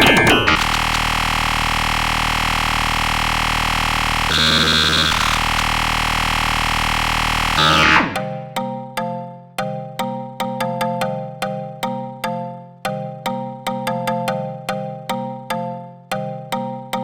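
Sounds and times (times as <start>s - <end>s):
dense cluster of synthesized notes: 0.3s - 8.2s.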